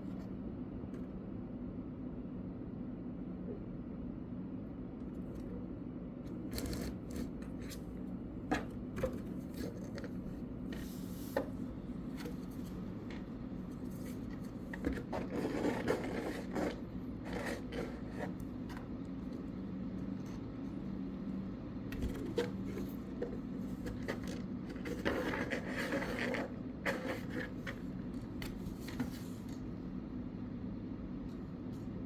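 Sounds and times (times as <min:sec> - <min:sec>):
steady low hum: 0:00.0 - 0:32.0
cat scratching cardboard box: 0:06.3 - 0:29.6.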